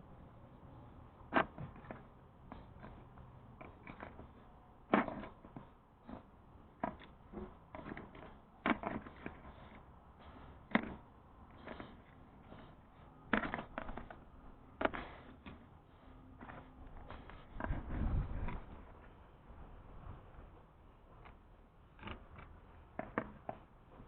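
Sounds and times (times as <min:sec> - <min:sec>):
small parts tapping and rustling: 0:01.3 - 0:15.7.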